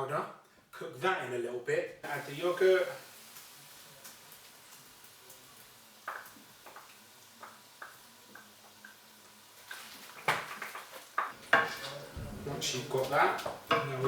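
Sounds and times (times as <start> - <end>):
utensils knocking on cookware: 11.2 - 14.0.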